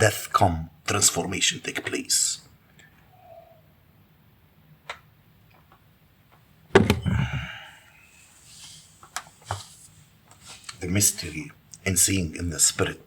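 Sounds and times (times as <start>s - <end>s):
sharp thump: 6.8s - 7.2s.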